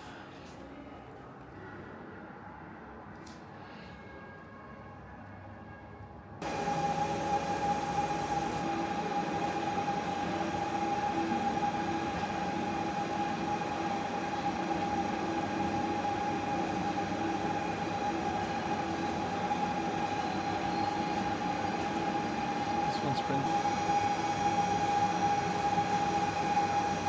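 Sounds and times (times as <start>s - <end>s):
factory machinery hum: 6.4s - 27.0s.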